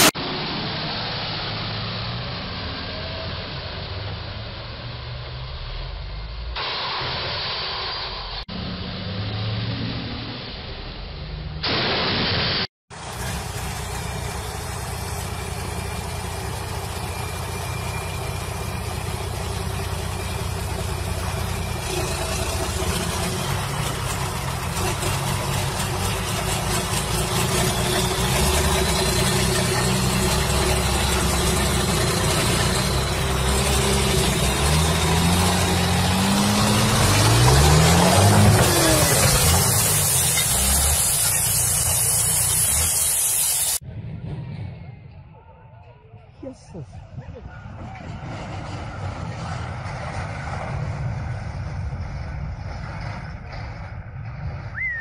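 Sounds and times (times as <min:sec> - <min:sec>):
vehicle engine revving: 0:00.0 - 0:06.6, 0:08.4 - 0:11.6, 0:12.9 - 0:43.8
short burst of hiss: 0:38.9 - 0:43.8.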